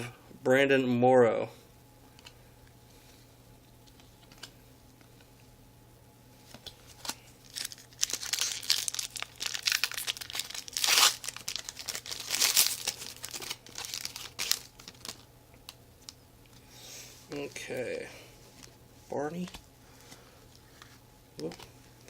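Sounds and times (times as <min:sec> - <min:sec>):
foil wrapper tearing and crinkling: 0:06.9 - 0:15.3.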